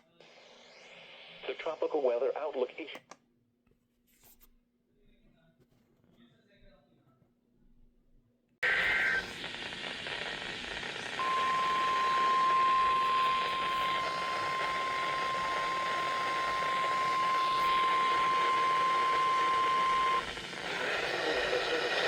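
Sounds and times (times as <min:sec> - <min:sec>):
radio hiss: 0:00.0 - 0:03.0, 0:08.6 - 0:22.0
steady high alarm beep: 0:11.2 - 0:20.3.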